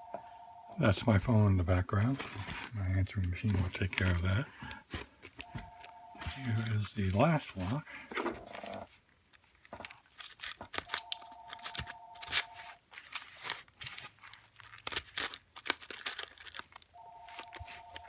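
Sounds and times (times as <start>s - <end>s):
telephone ringing: 0.0s - 1.0s, 5.4s - 6.8s, 10.9s - 12.7s, 16.9s - 18.0s
packaging tearing and crinkling: 8.4s - 18.0s.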